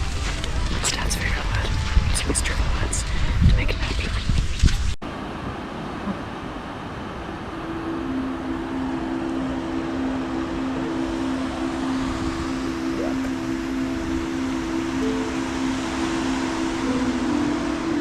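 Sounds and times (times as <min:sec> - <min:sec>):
wind: 0:00.0 - 0:18.0
background music low notes: 0:07.6 - 0:18.0.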